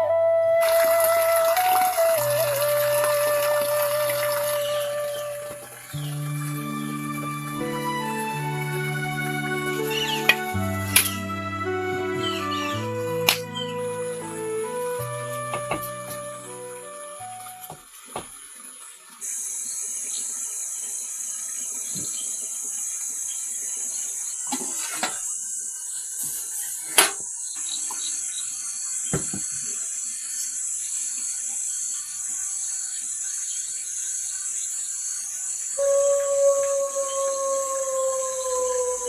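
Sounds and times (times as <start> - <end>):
long falling pitched call: 0.0 - 17.8, 35.8 - 39.0.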